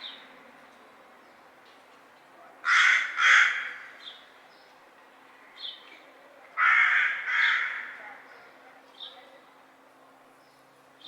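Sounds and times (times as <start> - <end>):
crow cawing: 2.6 - 3.9, 6.6 - 8.0.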